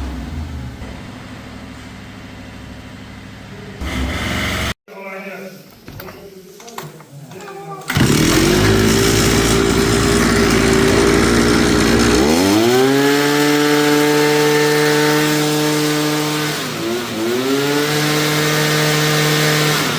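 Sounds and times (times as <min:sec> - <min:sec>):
brush cutter engine revving: 0:07.9 - 0:19.9.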